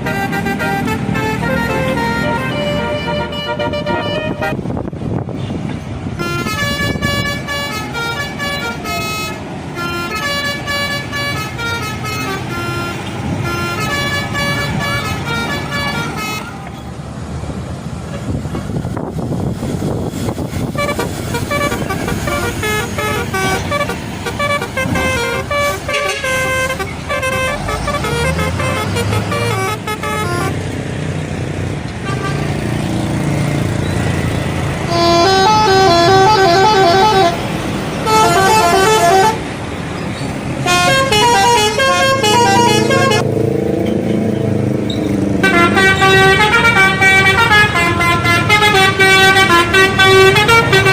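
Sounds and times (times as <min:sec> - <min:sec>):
multi-tone air horn melody: 0:00.0 - 0:04.8, 0:06.2 - 0:16.7, 0:20.6 - 0:30.6, 0:34.8 - 0:39.5, 0:40.6 - 0:43.3, 0:45.4 - 0:50.9
bus engine running: 0:00.0 - 0:50.9.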